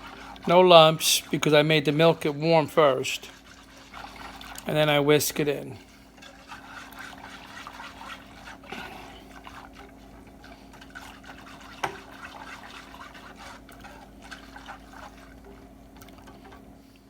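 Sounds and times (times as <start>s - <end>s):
faint steady hum: 0.0s - 17.0s
liquid sloshing: 0.0s - 17.0s
whisk scraping and clicking on pot: 0.0s - 17.0s.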